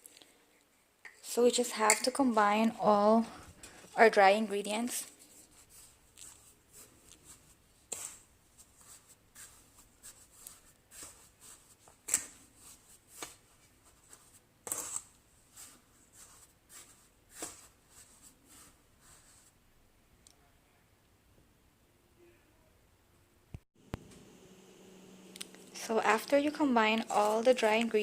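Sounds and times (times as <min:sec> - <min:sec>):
dry ingredients stirred in bowl: 0:03.2 - 0:19.6, 0:25.5 - 0:28.0.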